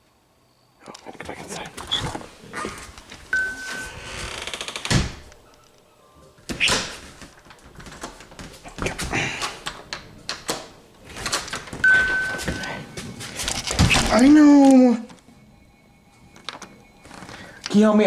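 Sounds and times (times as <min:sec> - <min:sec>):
short electronic beep: 0:03.4 - 0:04.1, 0:11.8 - 0:12.8.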